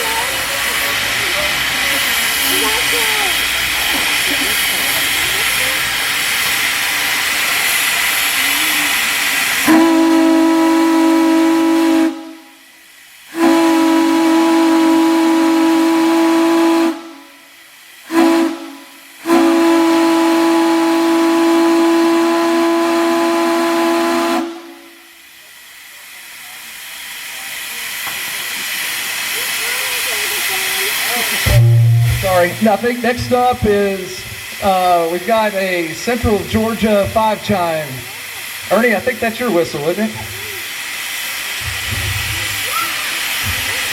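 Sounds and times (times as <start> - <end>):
steam hissing: 0.0 - 43.9
steam chime whistle blasts: 13.4 - 17.4, 31.5 - 33.1.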